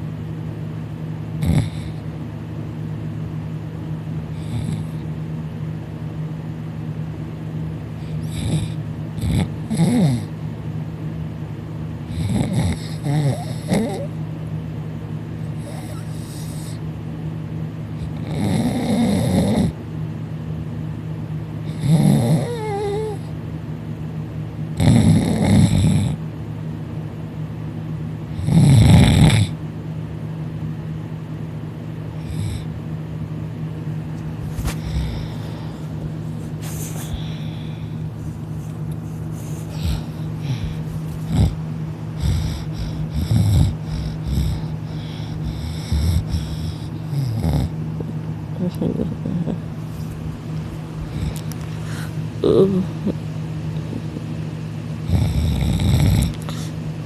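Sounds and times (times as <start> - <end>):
steady low hum: 0.0 - 57.0
person snoring loudly: 1.4 - 2.0, 4.3 - 5.0, 8.1 - 10.3, 12.1 - 14.2, 18.0 - 19.8, 21.7 - 23.2, 24.8 - 26.2, 28.4 - 29.6, 32.2 - 32.7, 34.5 - 35.8, 39.4 - 47.8, 51.0 - 53.2, 55.0 - 56.7.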